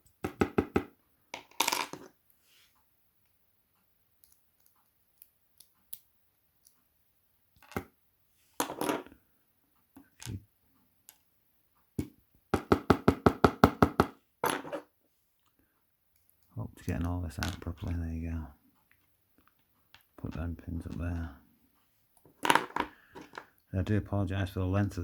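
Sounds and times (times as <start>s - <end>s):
metal parts knocking: 22.4s - 23.5s.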